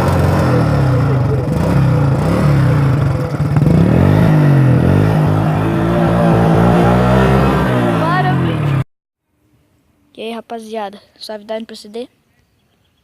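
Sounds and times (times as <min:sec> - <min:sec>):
motorcycle engine revving: 0:00.0 - 0:08.8.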